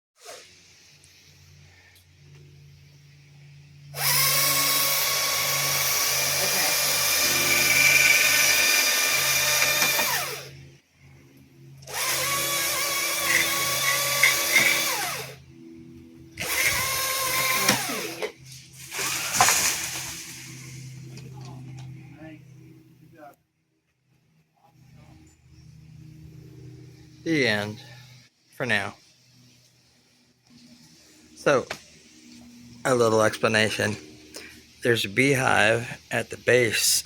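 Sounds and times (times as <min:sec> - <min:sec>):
chainsaw revving and idling: 0:03.9 - 0:10.5, 0:11.8 - 0:15.4, 0:16.4 - 0:20.0.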